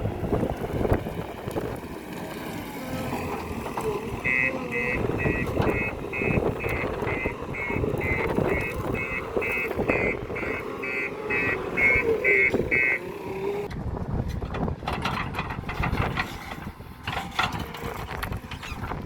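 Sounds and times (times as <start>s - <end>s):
diesel engine running: 0.0s - 19.0s
reversing alarm beeping: 4.1s - 13.3s.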